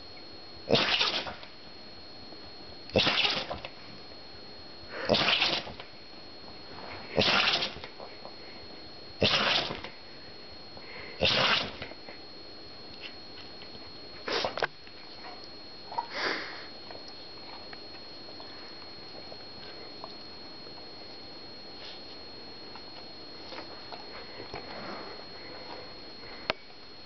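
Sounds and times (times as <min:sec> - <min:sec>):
dog sneezing: 0:00.7 - 0:01.4, 0:03.0 - 0:03.6, 0:05.1 - 0:05.8, 0:07.2 - 0:07.8, 0:09.2 - 0:09.8, 0:11.2 - 0:11.8.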